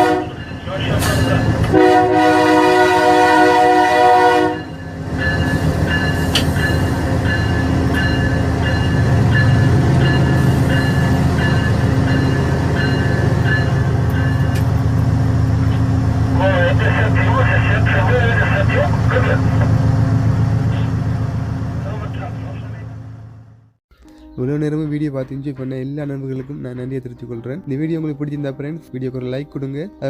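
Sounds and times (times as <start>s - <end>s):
train horn blasts: 0.0s - 4.8s
train rumbling: 0.0s - 23.7s.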